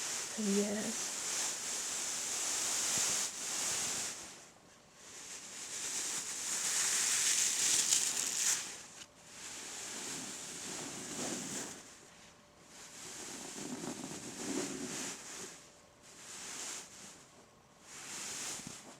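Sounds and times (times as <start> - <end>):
bean bag rustling: 5.3 - 9.0.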